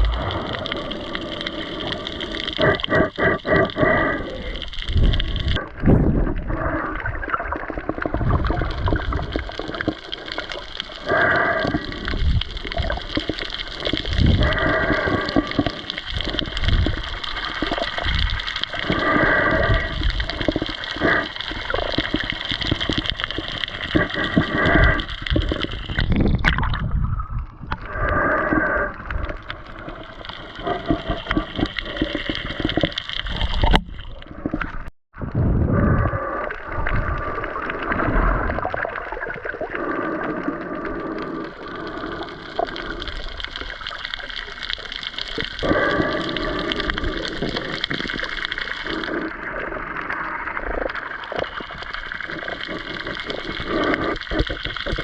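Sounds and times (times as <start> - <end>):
water gurgling and sloshing: 0.0 - 55.0.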